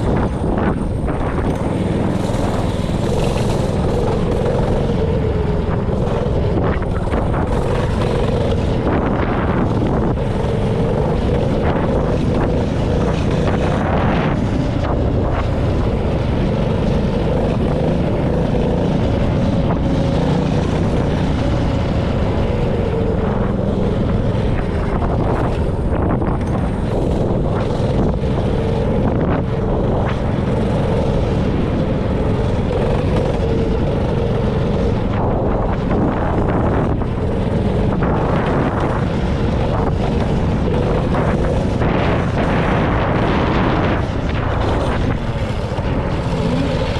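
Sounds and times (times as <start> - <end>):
mini bike engine running: 0.0 - 46.9.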